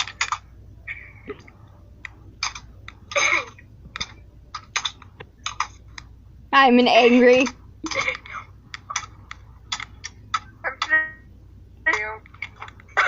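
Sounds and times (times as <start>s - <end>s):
computer keyboard typing: 0.0s - 0.4s, 2.4s - 3.3s, 4.0s - 5.8s.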